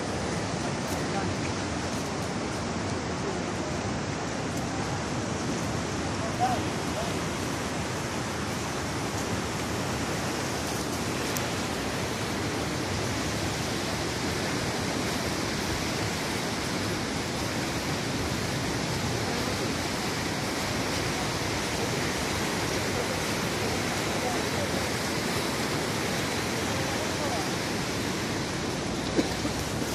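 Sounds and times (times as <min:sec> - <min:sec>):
floodwater rushing: 0:00.0 - 0:29.9.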